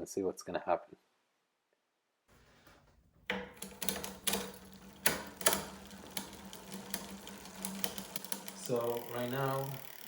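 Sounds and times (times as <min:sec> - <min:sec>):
bicycle chain ticking: 0:03.4 - 0:10.0.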